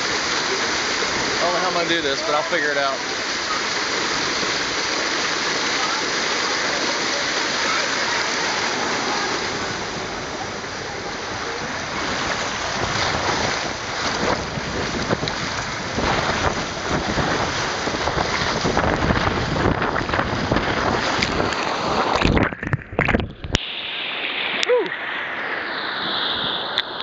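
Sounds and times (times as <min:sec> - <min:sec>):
rushing water: 0:00.0 - 0:27.0
wind buffeting microphone: 0:08.4 - 0:23.6.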